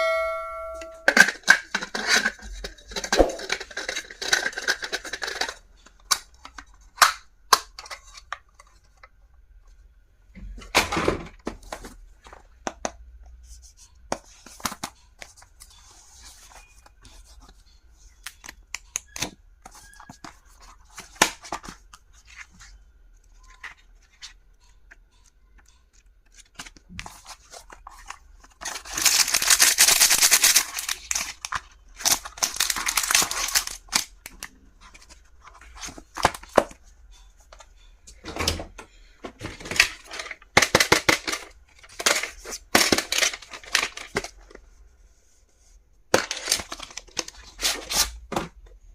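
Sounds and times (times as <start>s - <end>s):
packaging crinkling: 26.5s - 34.3s.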